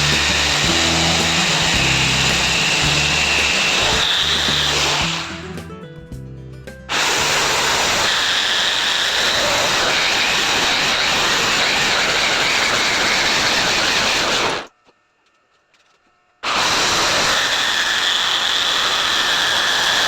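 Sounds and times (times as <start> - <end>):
power tool whining: 0.0 - 5.5, 6.9 - 14.7, 16.4 - 20.0
background music: 0.0 - 7.6.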